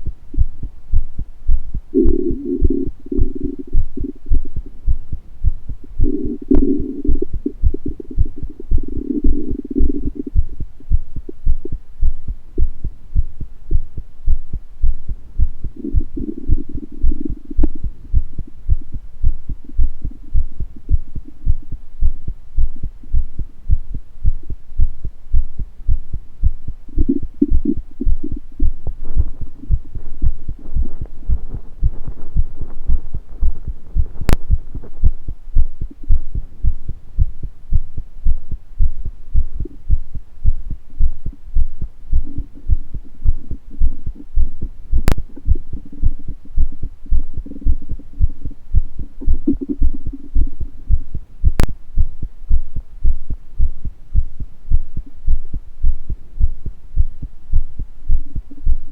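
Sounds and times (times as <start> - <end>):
heartbeat thudding: 0.0 - 58.9
stomach gurgles: 1.9 - 4.6, 5.9 - 10.6, 15.7 - 18.5, 26.9 - 36.5, 45.0 - 50.7.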